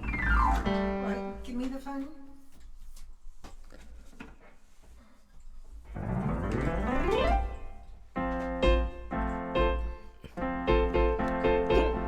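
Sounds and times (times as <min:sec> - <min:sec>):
keyboard chords: 0:06.0 - 0:12.0.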